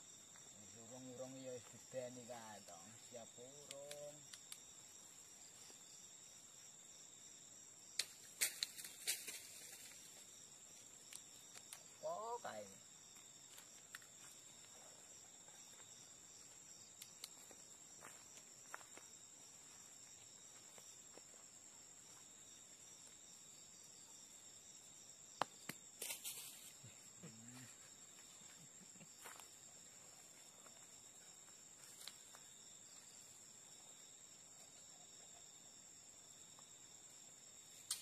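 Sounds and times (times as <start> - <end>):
crickets trilling: 0.0 - 38.0
faint clicks: 3.6 - 4.6
rustle: 8.0 - 14.7, 25.6 - 33.4.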